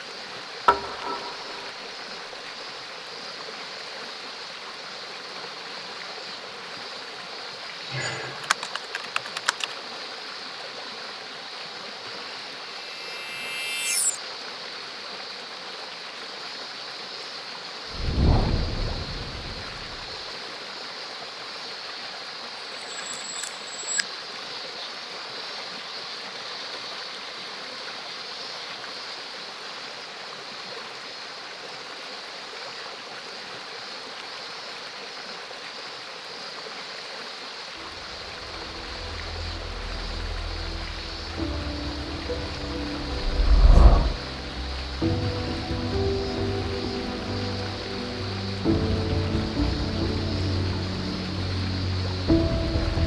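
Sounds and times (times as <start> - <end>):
stream flowing over rocks: 0.0 - 53.0
faint clicks: 8.0 - 9.8
loud low thump: 18.0 - 20.2.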